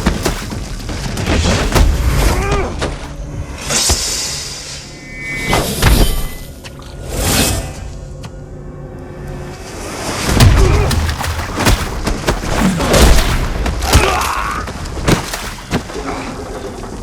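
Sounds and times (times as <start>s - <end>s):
punch impacts with heavy thuds: 0.0s - 0.7s, 1.4s - 3.1s, 10.4s - 14.3s, 15.0s - 15.9s.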